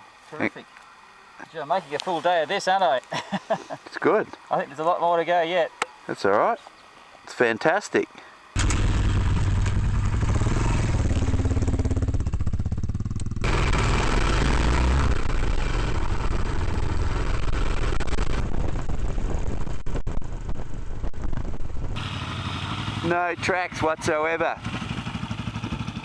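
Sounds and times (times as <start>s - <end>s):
motorcycle engine rumbling: 8.6s - 26.0s.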